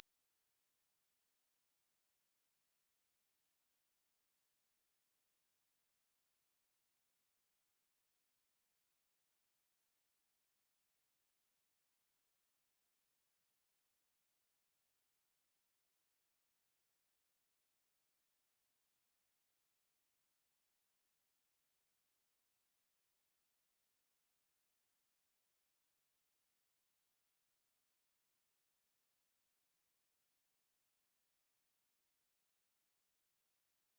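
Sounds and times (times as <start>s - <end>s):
high-pitched sine test tone: 10.9s - 33.9s.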